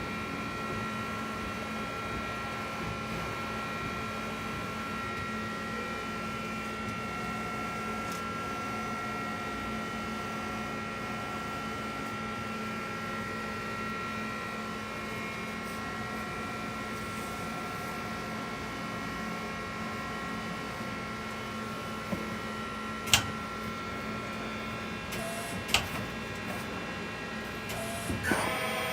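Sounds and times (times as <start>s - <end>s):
lathe machine hum: 13.2s - 28.9s.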